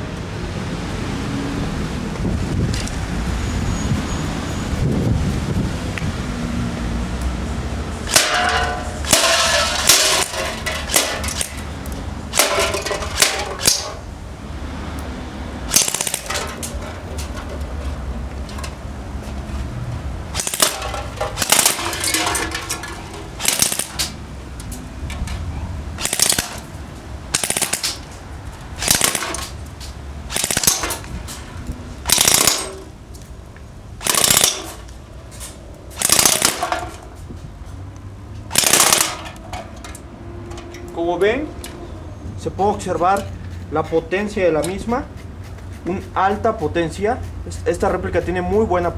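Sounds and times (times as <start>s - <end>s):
airsoft rifle firing bursts: 15.7s - 16.6s, 20.4s - 22.4s, 23.4s - 24.2s, 26.0s - 26.7s, 27.3s - 28.1s, 28.8s - 29.5s, 30.3s - 31.0s, 32.1s - 32.8s, 34.0s - 34.8s, 36.0s - 36.8s, 38.5s - 39.2s.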